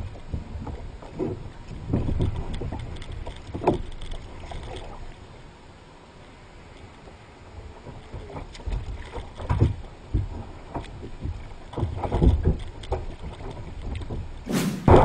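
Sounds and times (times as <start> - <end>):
knocks and thuds on boat: 0.0 - 4.0, 7.8 - 15.0.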